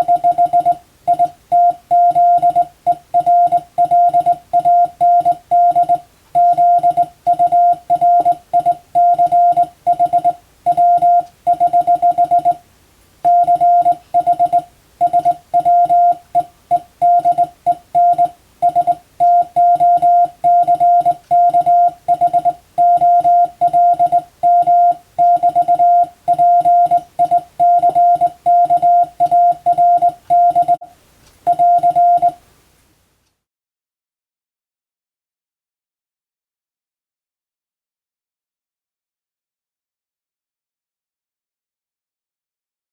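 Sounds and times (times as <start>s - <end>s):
morse code tone keyed on and off: 0.0s - 12.6s, 13.3s - 30.9s, 31.5s - 32.4s.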